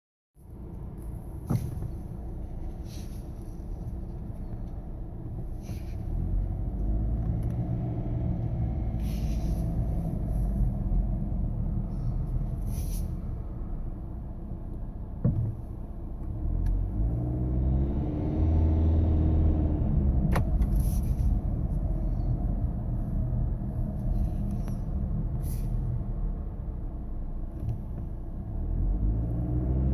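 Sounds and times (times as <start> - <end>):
car engine grinding rumble: 0.4 - 29.9.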